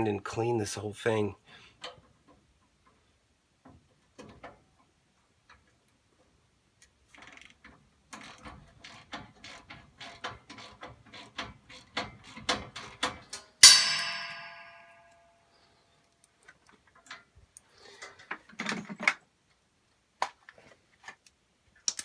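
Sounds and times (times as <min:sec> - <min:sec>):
loud metallic clang: 0:13.6 - 0:15.2.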